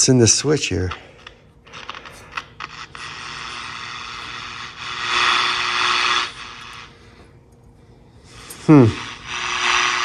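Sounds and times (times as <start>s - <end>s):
radio static hiss: 0.0s - 7.2s, 8.3s - 10.0s
radio speaker crackling and clicking: 0.4s - 6.9s.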